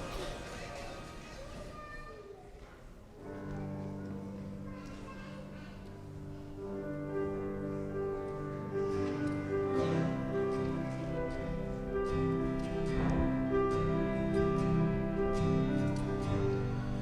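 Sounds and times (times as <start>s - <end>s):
instrumental music with sustained notes: 6.3s - 17.0s.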